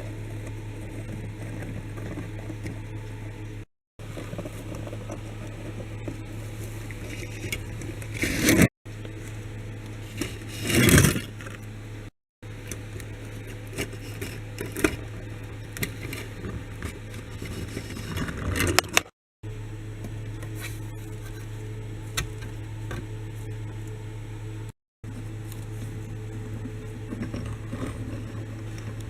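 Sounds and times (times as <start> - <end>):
toy vehicles scraping on surface: 0.0 - 3.4, 4.0 - 8.7, 10.0 - 11.6, 12.7 - 19.1, 25.4 - 29.0
steady low hum: 0.0 - 29.0.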